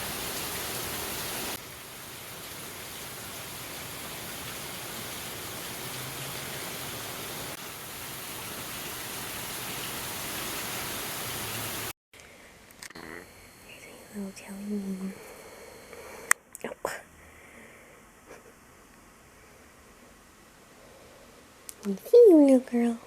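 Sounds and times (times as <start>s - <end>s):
steady rain hiss: 0.0s - 12.0s, 13.3s - 23.0s.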